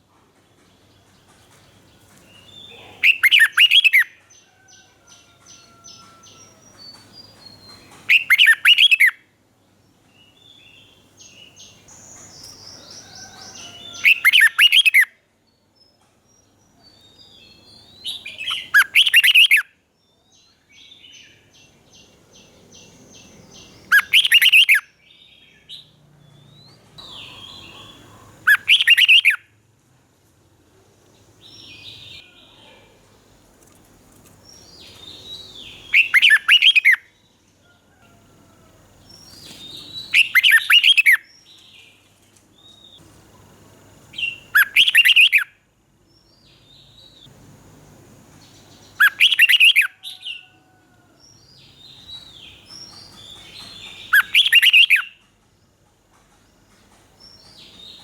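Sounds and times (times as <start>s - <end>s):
bird song phrase: 0.9s - 9.2s, 10.1s - 29.4s, 31.4s - 33.2s, 34.5s - 37.3s
bird chirps and trills: 1.2s - 4.2s, 5.1s - 9.2s, 10.3s - 15.1s, 15.9s - 19.7s, 20.5s - 29.4s, 34.5s - 37.3s, 39.1s - 42.0s, 44.1s - 45.5s, 48.4s - 50.5s, 51.3s - 55.3s.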